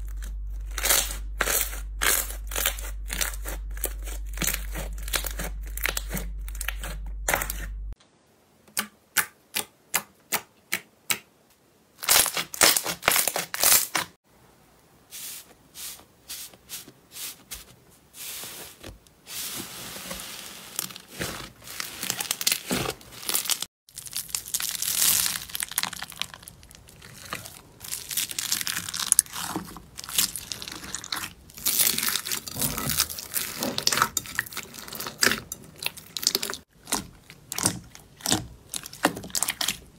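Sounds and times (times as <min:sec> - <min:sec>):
slime crinkling and tearing: 0:00.0 - 0:07.7, 0:12.0 - 0:14.1, 0:20.7 - 0:39.9.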